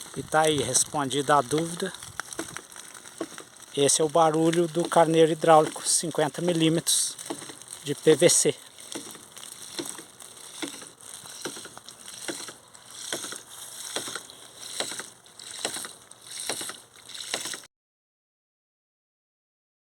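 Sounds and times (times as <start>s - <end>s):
water rushing: 0.0s - 17.6s.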